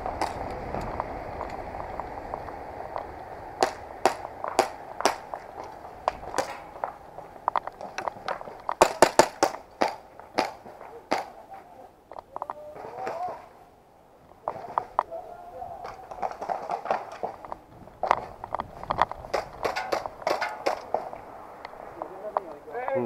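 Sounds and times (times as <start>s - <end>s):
airsoft guns firing: 8.8s - 11.3s.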